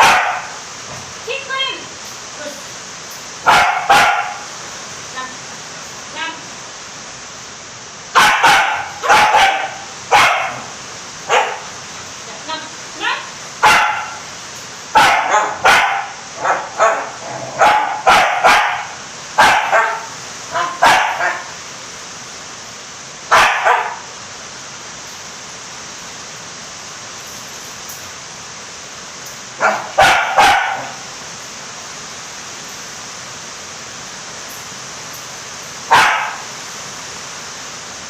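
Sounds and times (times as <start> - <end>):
dog barking: 0.0 - 0.6, 3.4 - 4.5, 8.2 - 11.8, 13.6 - 14.3, 15.0 - 21.6, 23.3 - 24.0, 29.6 - 31.1, 35.9 - 36.5
background hiss: 0.0 - 38.0.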